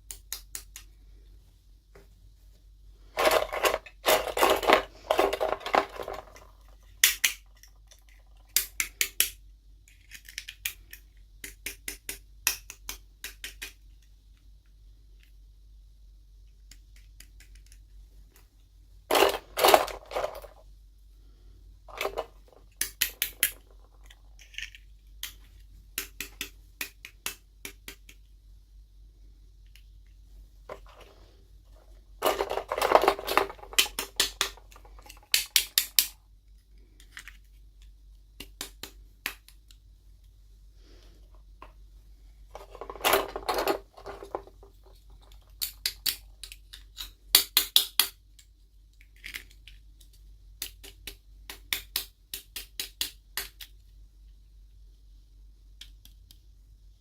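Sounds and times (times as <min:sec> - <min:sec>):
hard plastic pieces clicking: 0:03.1 - 0:14.5, 0:16.4 - 0:18.5, 0:19.1 - 0:20.6, 0:21.9 - 0:28.3, 0:30.7 - 0:39.8, 0:42.5 - 0:53.9.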